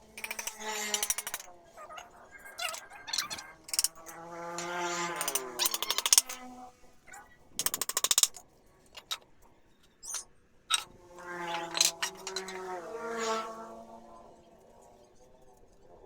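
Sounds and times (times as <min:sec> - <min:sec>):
rapid clicking: 0:00.1 - 0:01.5, 0:03.2 - 0:04.0, 0:04.6 - 0:06.4, 0:07.6 - 0:08.4.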